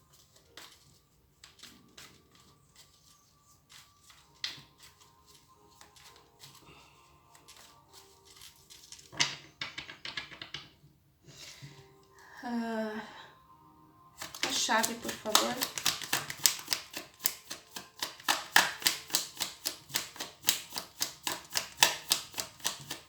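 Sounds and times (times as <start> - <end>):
faint background music: 0.0 - 23.0
cards shuffled and flicked: 0.1 - 6.6, 7.3 - 10.5, 14.2 - 23.0
rapid card snaps: 14.2 - 23.0.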